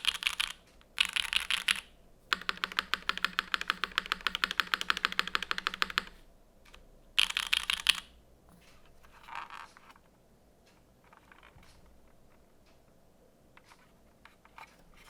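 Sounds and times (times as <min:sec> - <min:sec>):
fast typing on mechanical keyboard: 0:00.0 - 0:06.2, 0:07.2 - 0:08.2.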